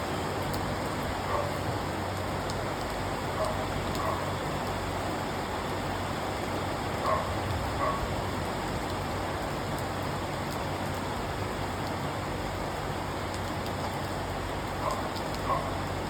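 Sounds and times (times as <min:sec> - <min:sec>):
rain on a window: 0:00.0 - 0:16.0
raindrop plinks: 0:08.6 - 0:16.0.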